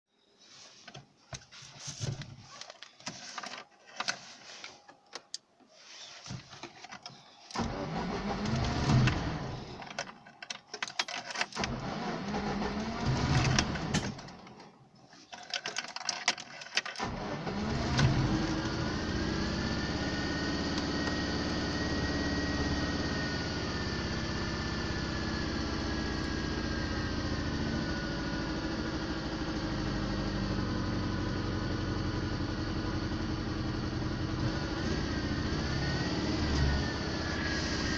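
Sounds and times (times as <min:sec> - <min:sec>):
car engine cranking and idling: 0:01.0 - 0:37.9
light clicks and rattles: 0:14.1 - 0:17.0.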